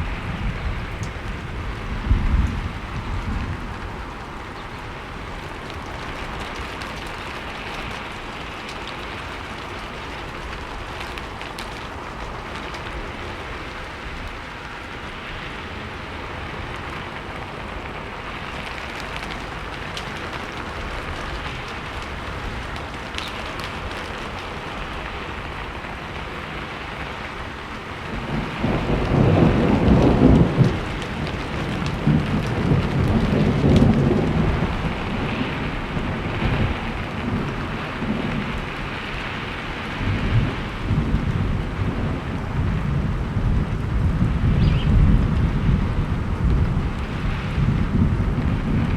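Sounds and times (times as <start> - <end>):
low rumble of thunder: 0.0 - 8.4, 9.2 - 48.9
rain falling: 0.0 - 48.9.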